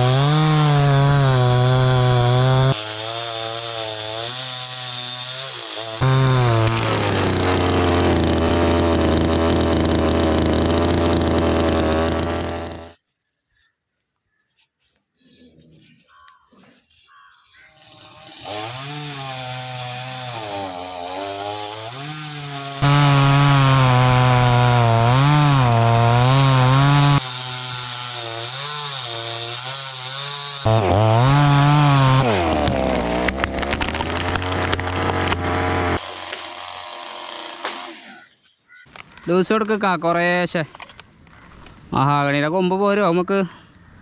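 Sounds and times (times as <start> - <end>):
chainsaw cutting wood: 0.0 - 13.0, 17.6 - 38.3.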